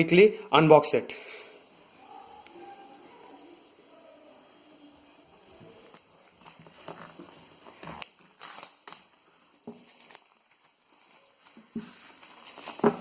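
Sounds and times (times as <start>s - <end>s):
plastic wrap and cardboard rustling: 5.4s - 13.0s.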